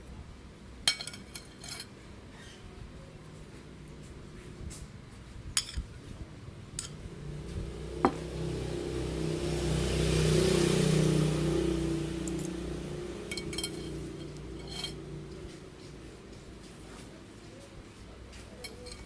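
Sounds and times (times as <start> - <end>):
vehicle engine passing by: 6.8 - 17.2
light clinks: 13.3 - 15.0, 18.6 - 19.0.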